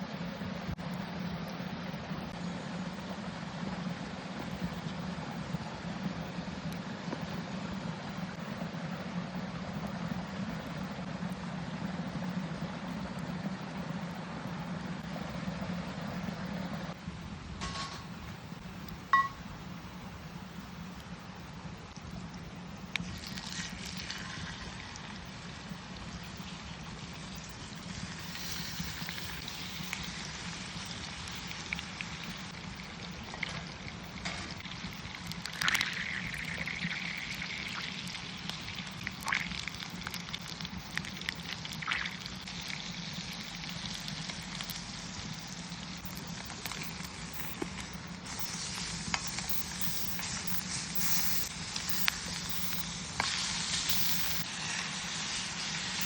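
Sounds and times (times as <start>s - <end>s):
meat sizzling with pops: 17.6s - 56.0s.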